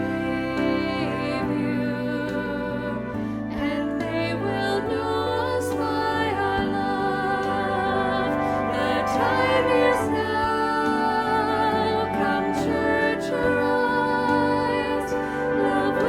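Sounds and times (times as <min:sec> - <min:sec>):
person singing with vibrato: 0:00.0 - 0:16.0
sustained instrumental accompaniment: 0:00.0 - 0:16.0.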